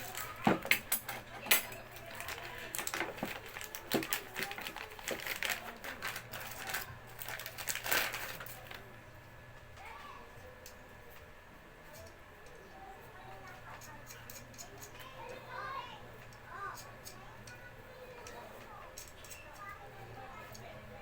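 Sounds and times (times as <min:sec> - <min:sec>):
tools and packaging handled: 0:00.0 - 0:08.8
packaging rustling: 0:02.0 - 0:08.8.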